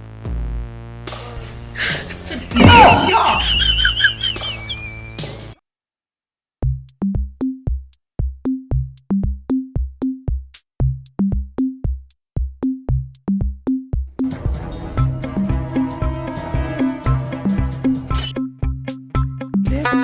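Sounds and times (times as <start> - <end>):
backing music: 0.1 - 5.6, 12.6 - 20.0
electronic drum machine beat: 6.6 - 20.0.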